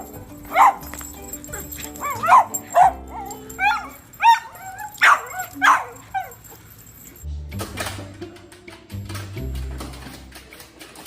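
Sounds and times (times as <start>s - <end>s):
background music: 0.0s - 6.1s, 7.2s - 11.0s
dog yipping and barking: 0.0s - 6.9s.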